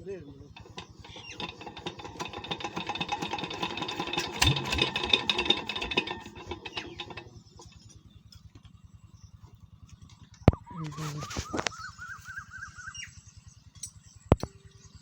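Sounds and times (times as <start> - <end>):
loud metallic clatter: 0.5 - 7.8
diesel engine thumping: 0.5 - 8.8.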